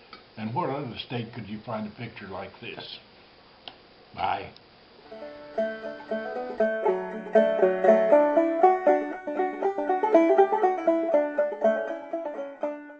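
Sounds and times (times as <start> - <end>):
fast bluegrass banjo tune: 5.1 - 12.9.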